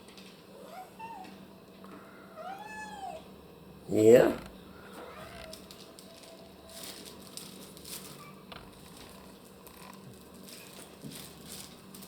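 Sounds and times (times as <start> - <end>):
small pets rustling in cage: 4.8 - 12.0.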